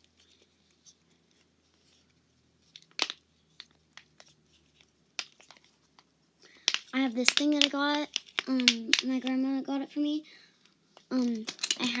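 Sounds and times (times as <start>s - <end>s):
fidget toy clicks and taps: 6.6s - 9.4s.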